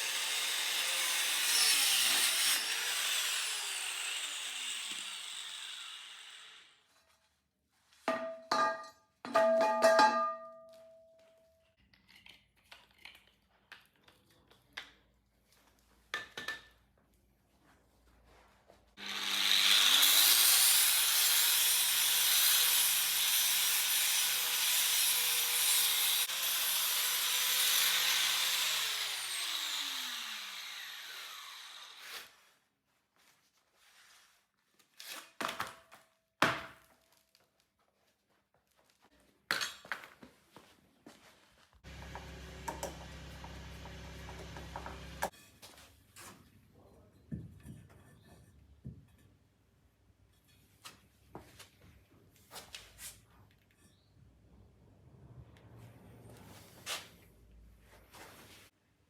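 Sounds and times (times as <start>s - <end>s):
power saw cutting metal: 0.0s - 6.8s, 19.0s - 32.4s, 41.9s - 45.3s.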